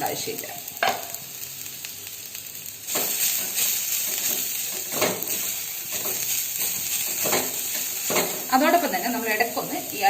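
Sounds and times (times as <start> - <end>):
vegetables sizzling in hot oil: 0.0 - 10.0
spoon scraping pan: 2.9 - 8.5.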